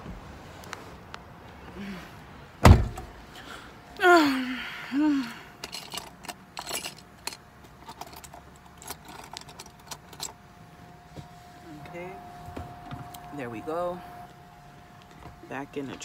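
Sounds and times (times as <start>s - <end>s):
heavy thump: 2.6s - 3.2s
light clicks and rattles: 5.6s - 10.4s.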